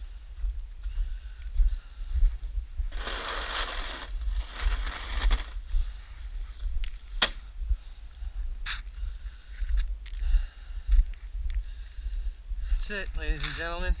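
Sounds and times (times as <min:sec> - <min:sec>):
snow shovel scraping snow: 0:02.9 - 0:05.6.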